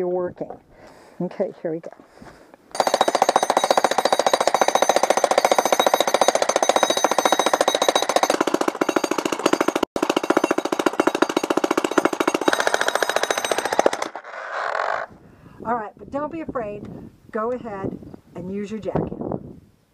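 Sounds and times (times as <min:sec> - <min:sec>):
jackhammer breaking concrete: 0:02.8 - 0:14.2.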